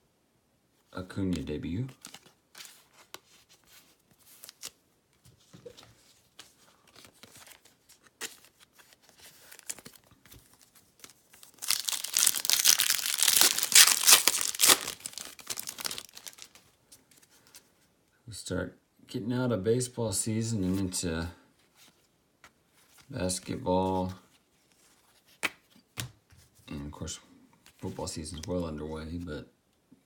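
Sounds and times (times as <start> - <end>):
foil wrapper tearing and crinkling: 11.0 - 16.6.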